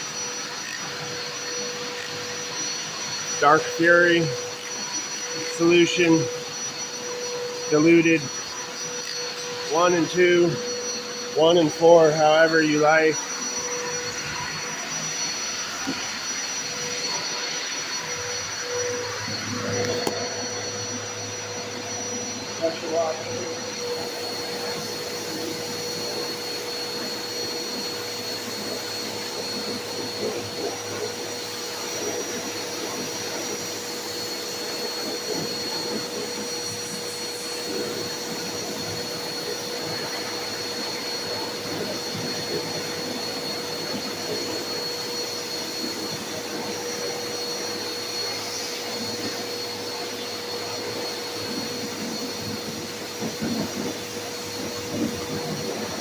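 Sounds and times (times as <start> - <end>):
pressure washer pump whining: 0.0 - 56.0.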